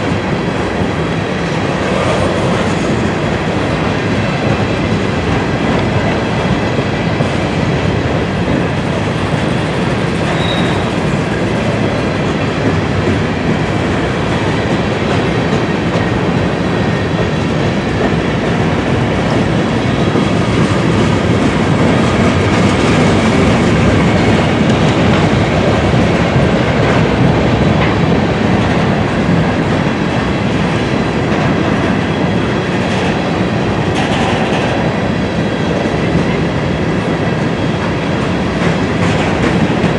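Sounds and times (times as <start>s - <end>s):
train wheels on rails: 0.0s - 39.9s.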